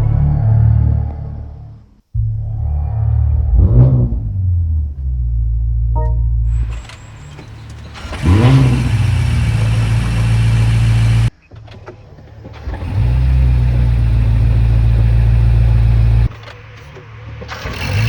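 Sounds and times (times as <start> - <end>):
car engine starting and idling: 5.9 - 18.0.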